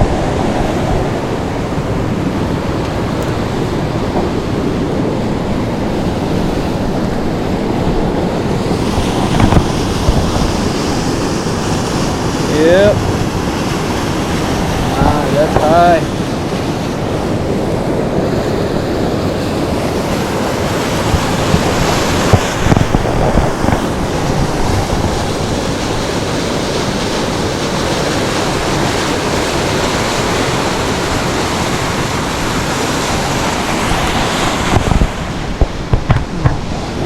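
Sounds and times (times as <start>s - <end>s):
short thumps: 34.7s - 36.7s.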